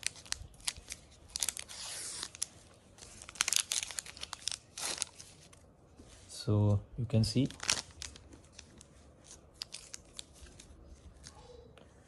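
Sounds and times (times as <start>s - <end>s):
wrapper tearing and crinkling: 0.0s - 5.6s, 7.4s - 11.4s.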